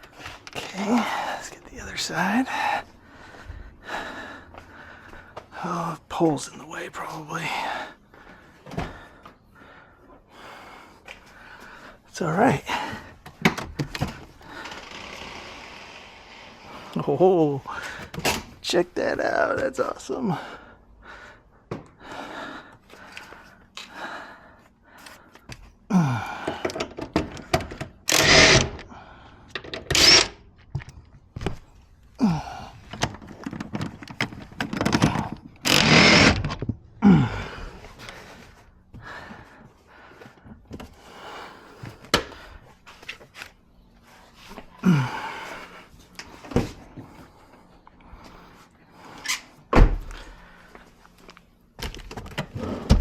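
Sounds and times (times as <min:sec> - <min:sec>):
short creaks sliding down in pitch: 0:14.6 - 0:16.8.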